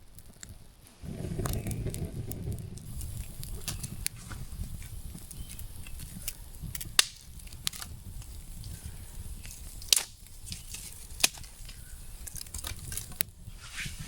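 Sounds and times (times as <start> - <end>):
campfire crackling: 0.0 - 14.0
low steady rumble: 1.0 - 9.3.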